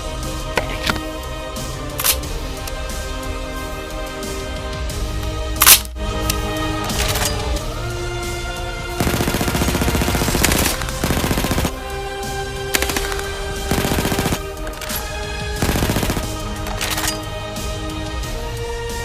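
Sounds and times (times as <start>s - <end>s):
background music: 0.0s - 19.0s
rapid-fire gunshots: 2.0s - 2.3s, 9.0s - 17.4s.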